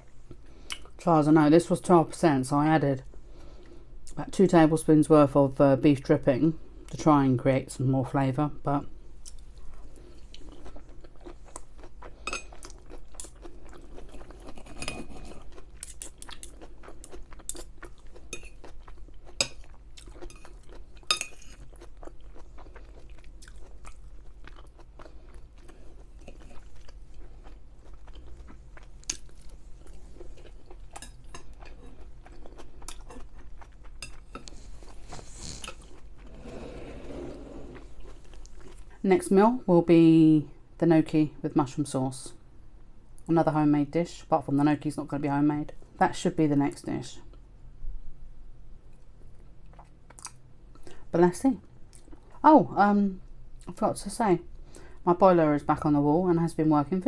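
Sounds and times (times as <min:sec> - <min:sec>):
person chewing: 0:09.2 - 0:36.4, 0:37.8 - 0:39.0, 0:48.9 - 0:51.0.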